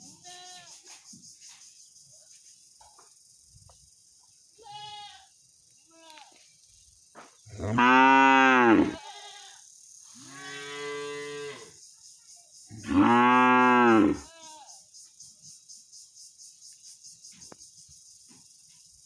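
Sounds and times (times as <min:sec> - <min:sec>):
cow mooing: 0:07.5 - 0:09.0, 0:12.8 - 0:14.3.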